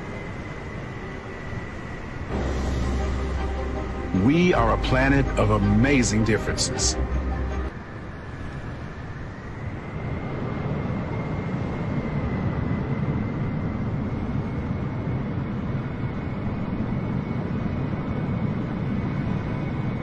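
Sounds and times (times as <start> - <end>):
jet engine rumble in cabin: 7.9 - 20.0.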